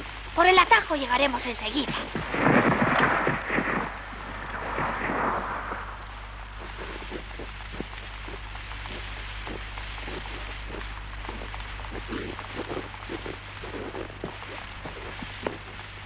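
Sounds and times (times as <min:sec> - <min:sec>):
rain hiss: 0:00.0 - 0:16.0
wind gusts: 0:01.6 - 0:16.0.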